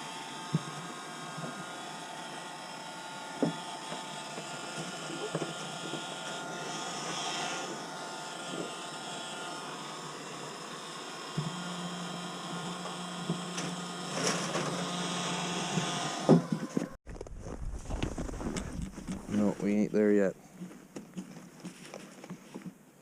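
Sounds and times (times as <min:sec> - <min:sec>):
heat gun blowing hot air: 0:00.0 - 0:17.0.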